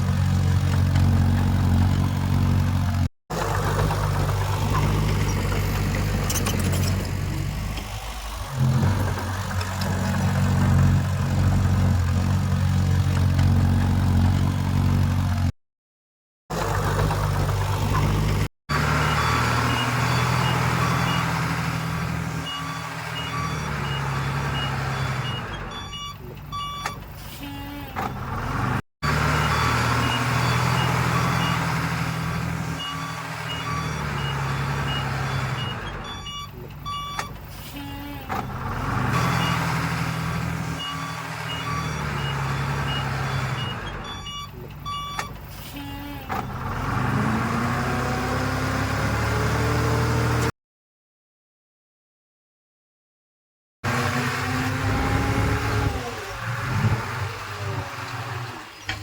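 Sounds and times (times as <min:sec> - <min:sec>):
diesel engine running: 0:00.0 - 0:15.5, 0:16.5 - 0:50.4
reversing alarm beeping: 0:22.4 - 0:27.0, 0:32.8 - 0:37.4, 0:40.8 - 0:45.4.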